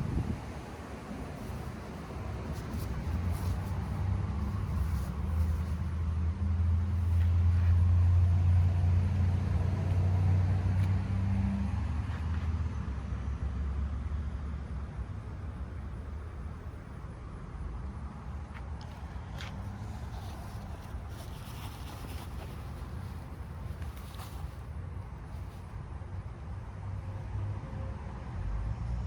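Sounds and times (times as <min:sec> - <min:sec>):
vehicle engine passing by: 0:00.0 - 0:14.6.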